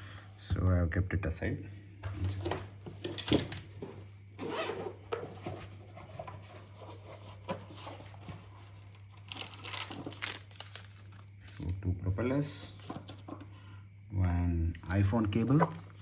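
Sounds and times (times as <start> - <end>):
packaging handled: 2.2 - 11.3
zipper rasping open: 4.4 - 5.0.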